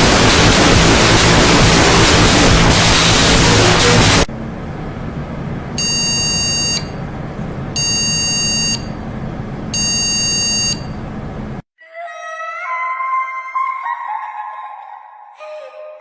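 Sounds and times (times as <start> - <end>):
low hum and hiss: 0.0 - 11.6
shrill alarm beeps: 5.8 - 7.0, 7.8 - 8.9, 9.7 - 11.0.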